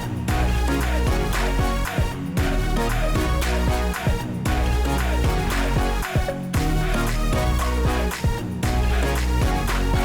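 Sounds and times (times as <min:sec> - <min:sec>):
electronic dance music: 0:00.0 - 0:10.0.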